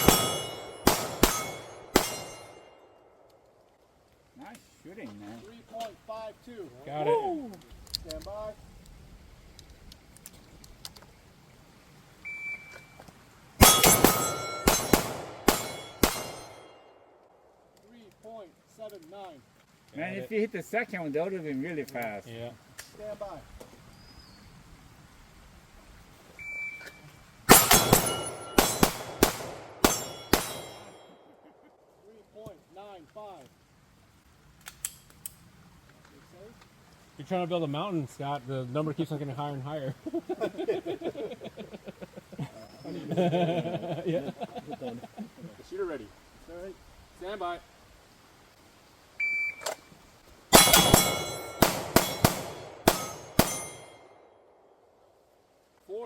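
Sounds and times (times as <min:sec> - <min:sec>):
pistol shots: 0:00.0 - 0:02.8, 0:13.6 - 0:16.7, 0:27.5 - 0:31.1, 0:50.5 - 0:54.1
steel targets ringing: 0:00.0 - 0:03.0, 0:13.6 - 0:16.9, 0:27.5 - 0:31.3, 0:50.5 - 0:54.2.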